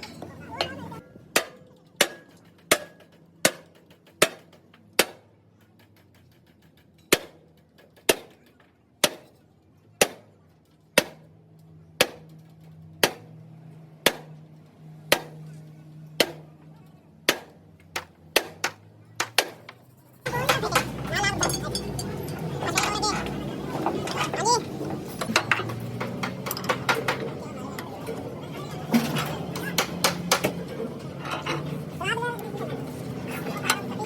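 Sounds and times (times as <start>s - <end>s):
hammer striking steel: 1.3s - 5.2s, 28.9s - 30.6s.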